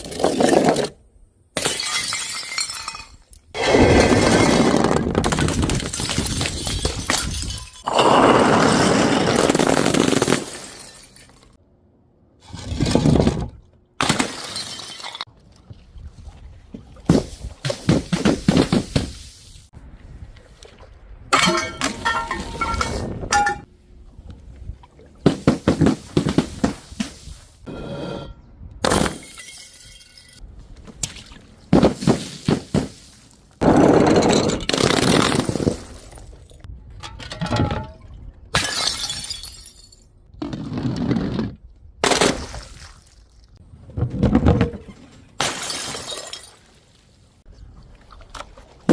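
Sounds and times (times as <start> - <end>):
glass bottles shattering: 1.6 - 11.6, 14.0 - 15.3, 21.4 - 23.7, 28.8 - 30.4, 38.6 - 40.1, 45.4 - 46.8
glass shards clinking: 21.4 - 23.7.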